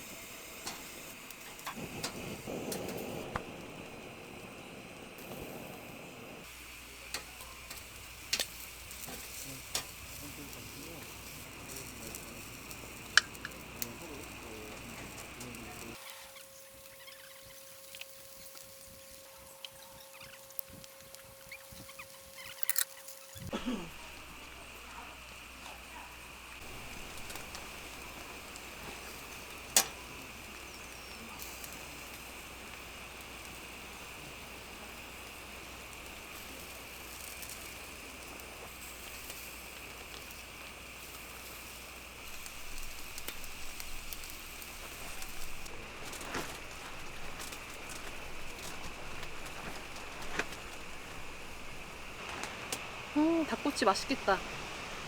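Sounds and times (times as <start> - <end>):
meat sizzling on a grill: 0.0 - 55.0.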